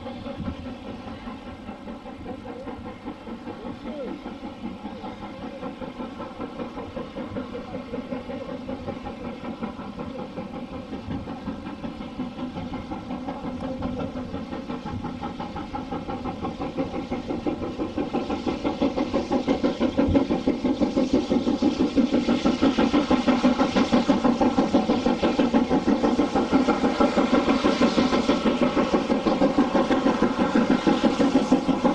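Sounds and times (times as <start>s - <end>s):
steam locomotive exhaust beats: 0.0s - 31.9s.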